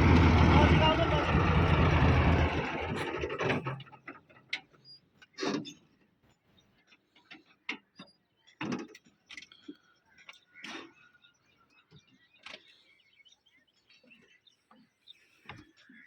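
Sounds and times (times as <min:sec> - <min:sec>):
bulldozer engine: 0:00.0 - 0:04.2.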